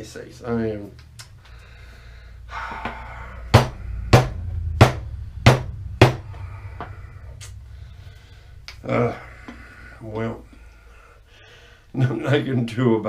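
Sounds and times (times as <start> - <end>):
steady low hum: 0.0 - 13.0
sharp knocks on hard surface: 2.8 - 6.3.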